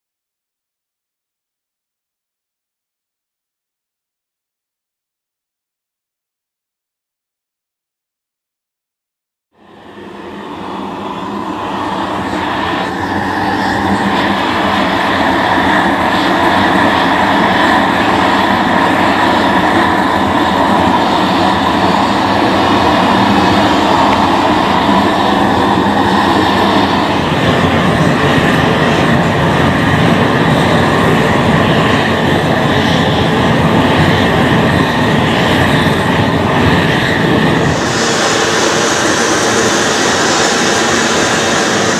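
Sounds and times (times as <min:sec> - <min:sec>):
propane torches burning: 0:37.6 - 0:41.9.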